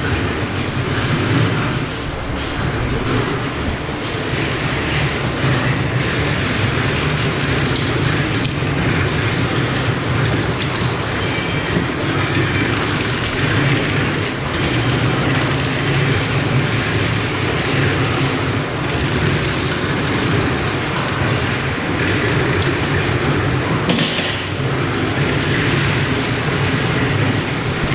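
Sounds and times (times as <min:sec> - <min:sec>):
low hum: 0:00.0 - 0:06.9
factory machinery running: 0:00.0 - 0:27.9.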